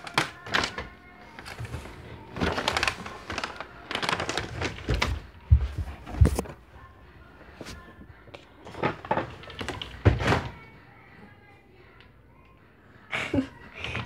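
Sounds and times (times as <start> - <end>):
objects clattering being handled: 8.6 - 10.6.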